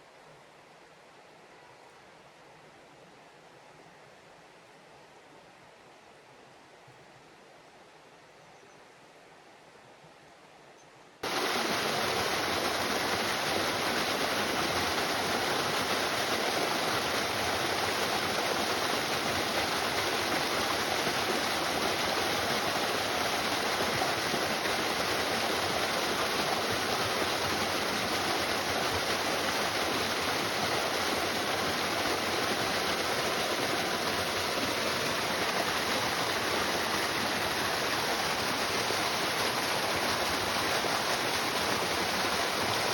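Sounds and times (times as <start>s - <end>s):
river water rushing: 11.2s - 42.9s.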